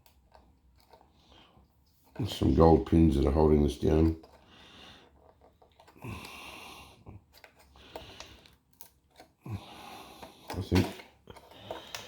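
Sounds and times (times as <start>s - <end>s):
plastic clicks and handling: 0.0s - 1.2s, 7.2s - 9.4s, 10.2s - 12.0s.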